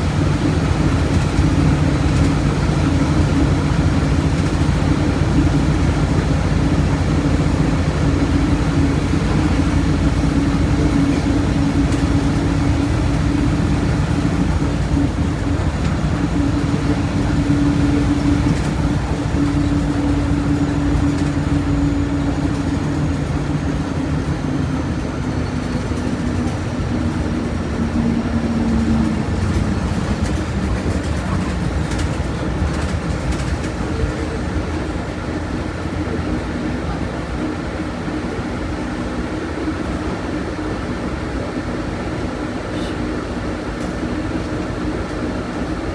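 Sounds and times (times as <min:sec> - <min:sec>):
bus diesel engine drone: 0:00.0 - 0:45.9
road and rolling noise: 0:00.0 - 0:45.9.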